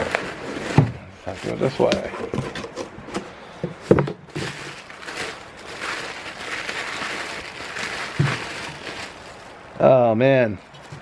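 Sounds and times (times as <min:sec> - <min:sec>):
bubble wrap rustling and crinkling: 0:00.0 - 0:02.8, 0:03.8 - 0:09.7.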